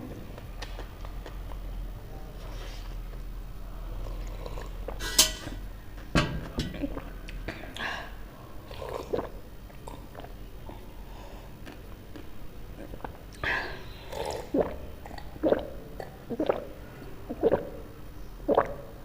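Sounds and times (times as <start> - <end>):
chewing: 11.6 - 13.4.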